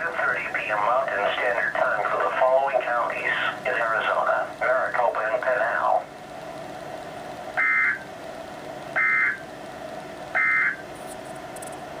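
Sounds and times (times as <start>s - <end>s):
radio hiss: 0.0s - 6.1s.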